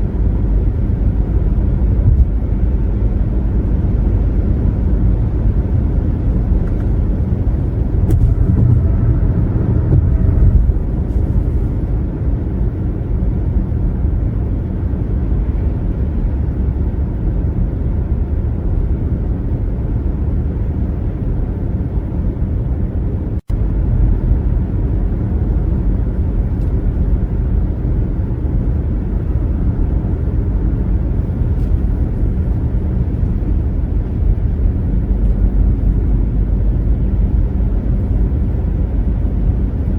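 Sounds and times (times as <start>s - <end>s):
road and tyre rumble: 0.0s - 39.9s.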